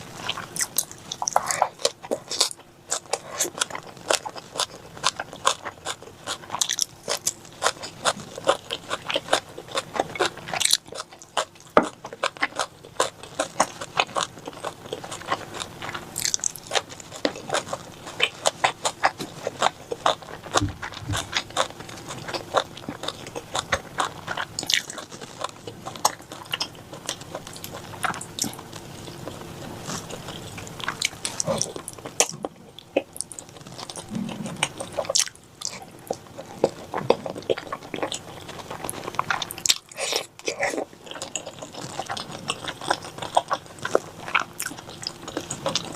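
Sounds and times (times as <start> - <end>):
chewing and biting food: 0.0 - 45.9.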